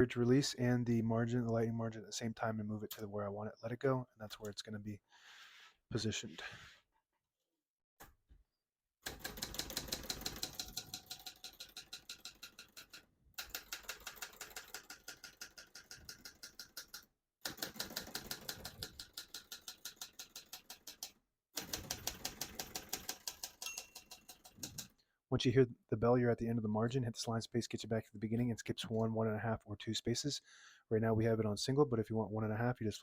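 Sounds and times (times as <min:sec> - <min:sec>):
typewriter keys clattering: 0:09.1 - 0:16.3, 0:17.5 - 0:24.9.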